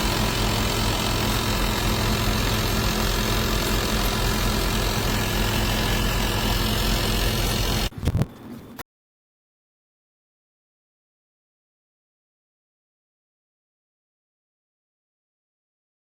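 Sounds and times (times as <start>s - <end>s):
air conditioner running: 0.0s - 8.8s.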